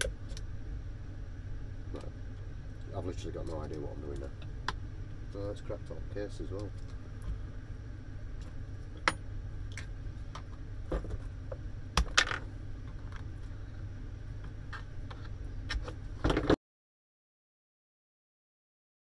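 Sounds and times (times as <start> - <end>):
steady low hum: 0.0 - 16.6.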